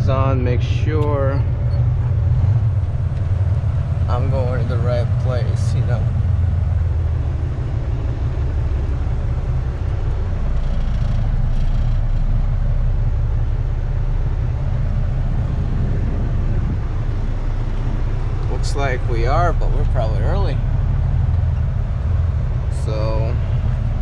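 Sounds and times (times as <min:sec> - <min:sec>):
diesel engine rumbling: 0:00.0 - 0:24.0.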